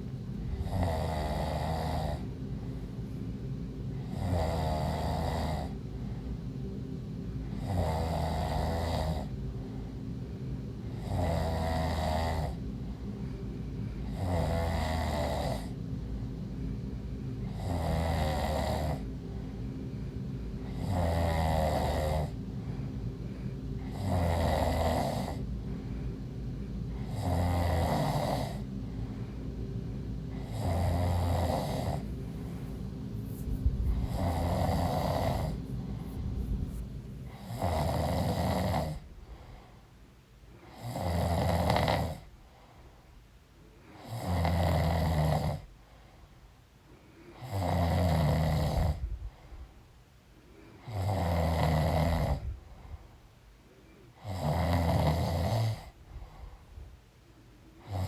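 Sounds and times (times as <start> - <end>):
background hum: 0.0 - 58.0
woman snoring: 0.4 - 2.9, 3.9 - 6.2, 7.4 - 9.8, 10.8 - 13.0, 14.0 - 15.8, 17.4 - 19.1, 20.6 - 22.4, 23.8 - 25.5, 26.9 - 28.7, 30.3 - 39.6, 40.6 - 42.3, 44.0 - 45.7, 47.4 - 49.1, 50.8 - 52.6, 54.2 - 56.0, 57.8 - 58.0.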